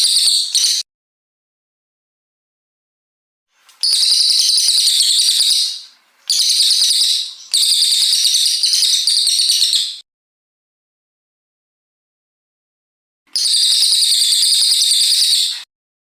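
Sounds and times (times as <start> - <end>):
songbird trilling: 3.7 - 10.0.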